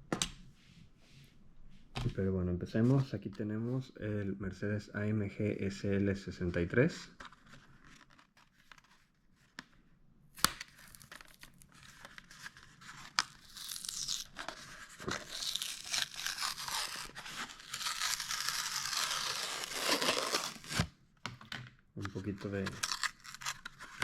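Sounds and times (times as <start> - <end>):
packaging tearing and crinkling: 10.4 - 20.9, 22.2 - 24.0.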